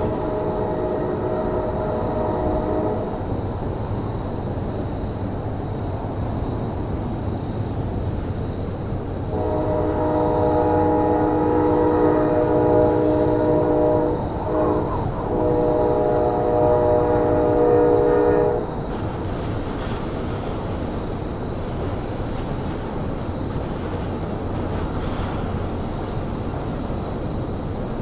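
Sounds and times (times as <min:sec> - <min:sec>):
locomotive air horn: 0:00.0 - 0:03.2, 0:09.3 - 0:18.8.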